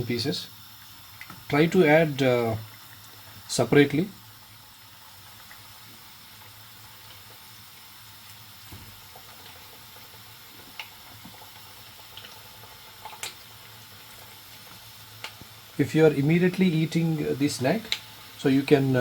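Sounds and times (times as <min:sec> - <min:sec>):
chicken deep-frying in oil: 0:00.0 - 0:19.0
faint oil pops and clicks: 0:01.2 - 0:01.6, 0:17.8 - 0:18.1.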